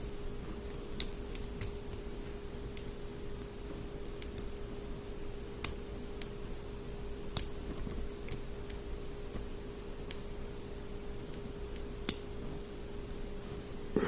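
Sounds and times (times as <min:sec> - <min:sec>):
steady hum: 0:08.9 - 0:14.0.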